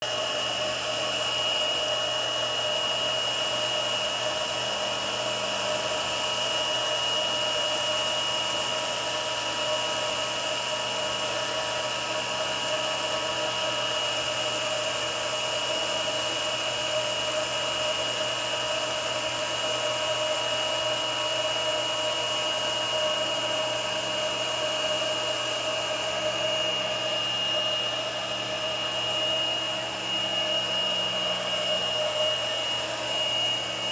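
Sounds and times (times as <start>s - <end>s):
vacuum cleaner motor whine: 0.0s - 33.9s.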